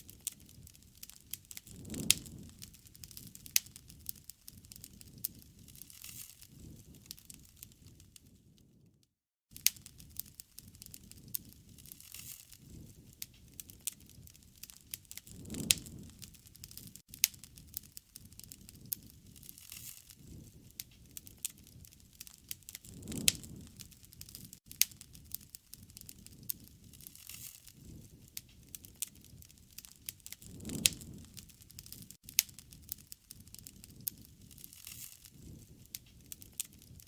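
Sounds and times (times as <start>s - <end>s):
wood fire crackling and popping: 0.0s - 8.8s, 9.5s - 37.0s
low rumble of flame: 0.0s - 37.0s.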